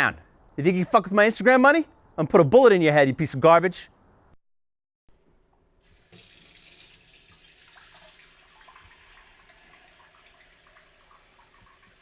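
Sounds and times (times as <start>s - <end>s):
water running from a tap: 5.9s - 12.0s.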